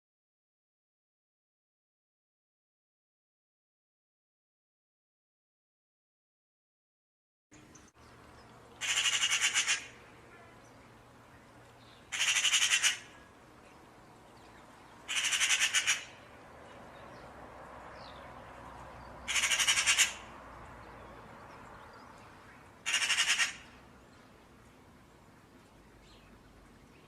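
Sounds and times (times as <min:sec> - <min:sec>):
bird harsh rattling call: 0:08.8 - 0:09.9, 0:12.1 - 0:13.2, 0:15.1 - 0:16.2, 0:19.3 - 0:20.3, 0:22.8 - 0:23.7.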